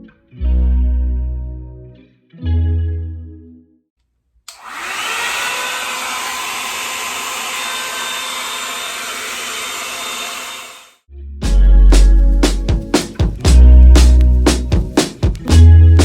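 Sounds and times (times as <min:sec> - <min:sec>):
hair dryer motor and air rushing: 0:04.5 - 0:11.0.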